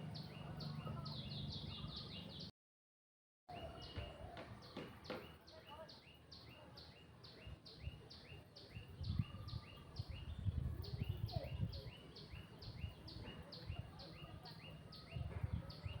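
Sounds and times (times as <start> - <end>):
bird chirping: 0.0 - 2.5.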